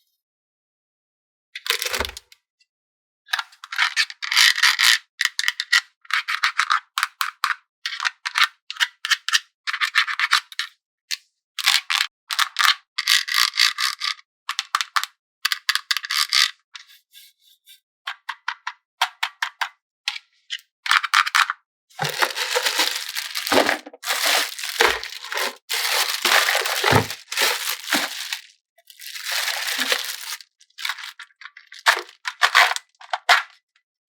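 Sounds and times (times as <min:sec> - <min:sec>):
toys and packaging rattling: 0:01.7 - 0:02.2, 0:22.0 - 0:33.6.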